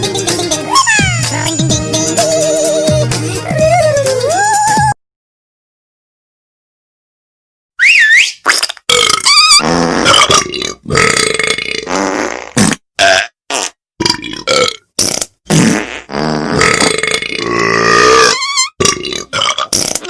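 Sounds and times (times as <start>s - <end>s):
burping ringtone: 13.0s - 13.4s.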